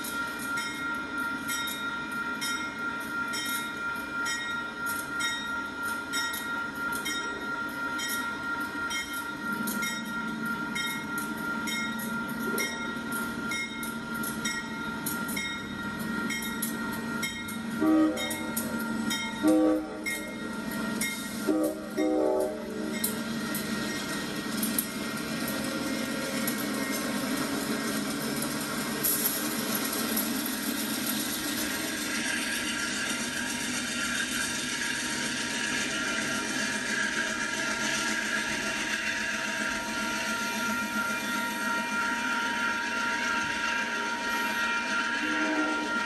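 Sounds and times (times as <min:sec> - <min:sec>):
crossing bell ringing: 0:00.0 - 0:46.0
diesel locomotive engine drone: 0:00.0 - 0:46.0
locomotive horn blasts: 0:17.8 - 0:18.4, 0:19.4 - 0:20.1, 0:21.4 - 0:22.7, 0:44.3 - 0:46.0.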